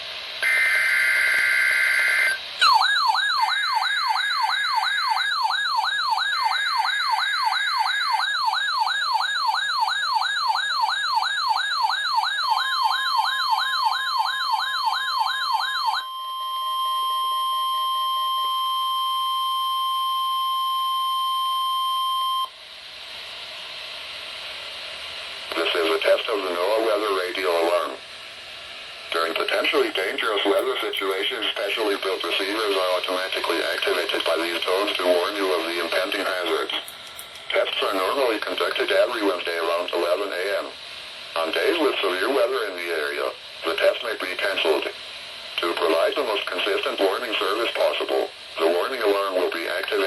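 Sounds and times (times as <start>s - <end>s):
warbling siren-like alarm: 0.4s - 18.5s
steady single-pitch alarm tone: 0.4s - 22.6s
radio hiss: 24.7s - 50.0s.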